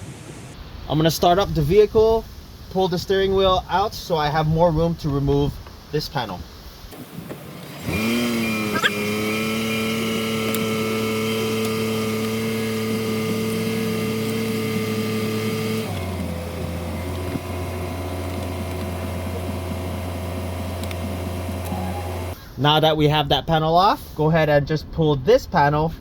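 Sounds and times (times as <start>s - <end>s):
car engine starting and idling: 6.9s - 22.4s.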